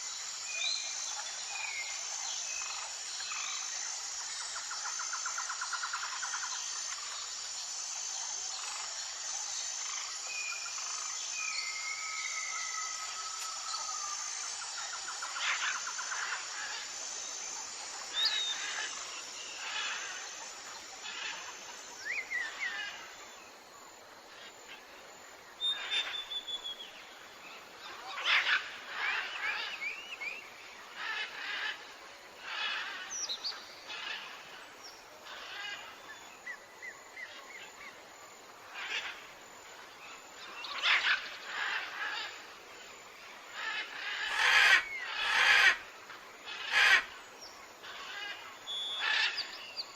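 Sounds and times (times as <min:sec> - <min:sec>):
faint steady hiss: 0:00.0 - 0:49.9
birds chirping and calling: 0:43.6 - 0:45.8, 0:46.5 - 0:47.2.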